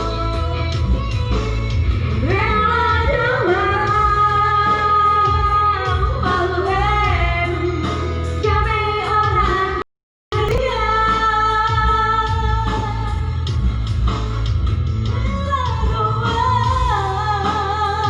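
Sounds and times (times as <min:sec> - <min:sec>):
woman singing: 0:02.2 - 0:09.8, 0:10.4 - 0:13.5, 0:15.1 - 0:18.0
heavy bass line: 0:10.3 - 0:11.0.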